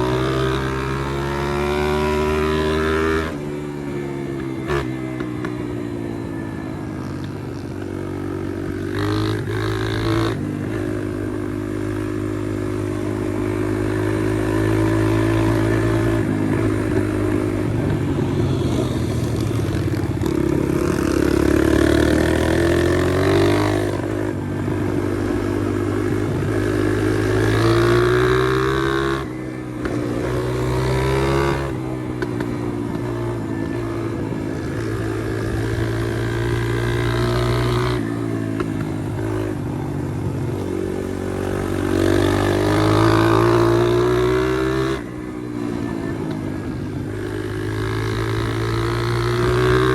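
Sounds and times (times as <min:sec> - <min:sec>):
motorbike engine revving: 0:00.0 - 0:49.9.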